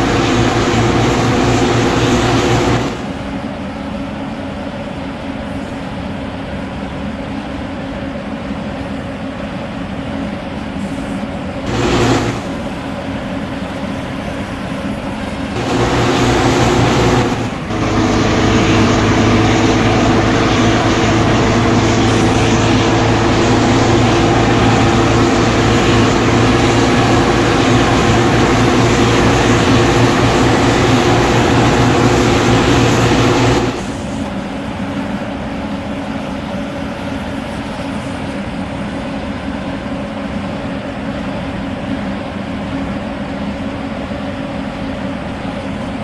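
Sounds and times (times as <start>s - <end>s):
bus engine running: 0.0s - 4.6s, 10.0s - 37.5s.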